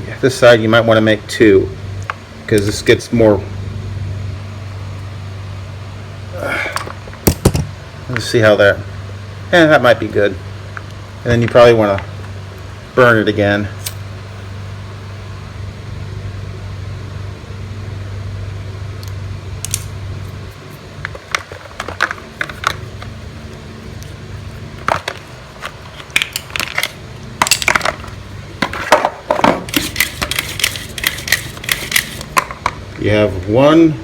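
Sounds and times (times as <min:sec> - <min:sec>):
steady low hum: 0:00.0 - 0:34.0
small hard parts clicking: 0:29.6 - 0:32.8.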